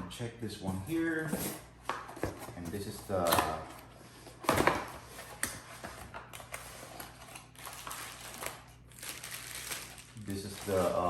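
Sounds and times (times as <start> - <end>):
packaging rustling: 4.5 - 11.0.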